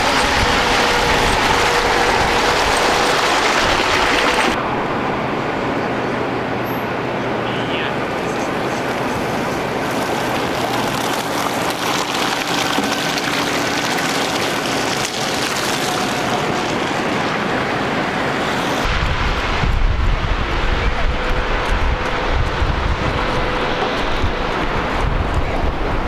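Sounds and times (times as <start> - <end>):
wind buffeting microphone: 0.0 - 7.4, 14.2 - 26.0
blizzard wind: 0.0 - 26.0
faint engine hum: 0.0 - 26.0
muffled street noise: 0.0 - 26.0.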